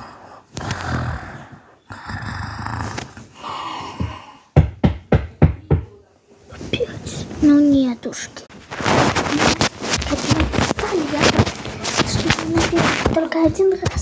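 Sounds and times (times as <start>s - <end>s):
knocks on a door: 4.0s - 5.9s.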